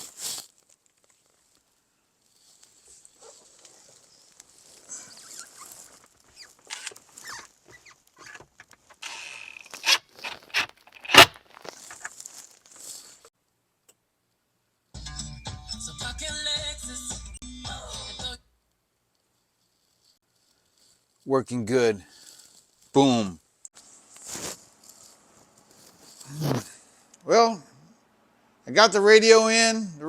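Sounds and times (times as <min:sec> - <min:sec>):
plastic trim scraping and rustling: 0:03.2 - 0:13.2
music from car stereo: 0:15.0 - 0:18.4.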